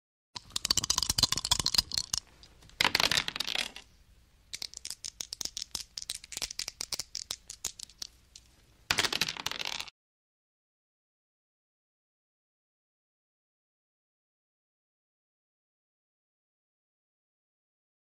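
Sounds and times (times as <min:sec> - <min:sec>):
dice rattling in a cup: 0:00.4 - 0:03.9, 0:04.5 - 0:09.9.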